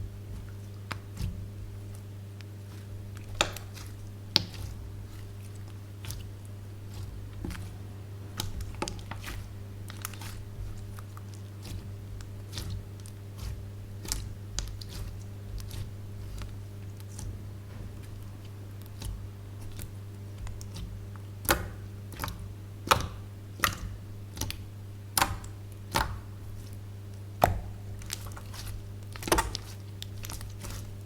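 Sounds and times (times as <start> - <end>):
slime squishing with sticky pops: 0.0 - 31.0
low hum: 4.1 - 12.3.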